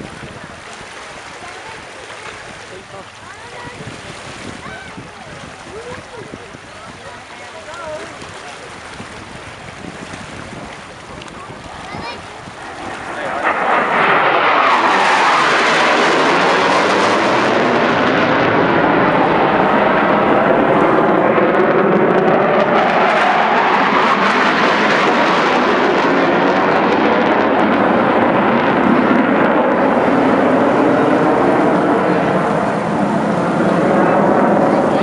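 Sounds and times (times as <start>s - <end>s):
jets passing over: 10.2s - 35.0s.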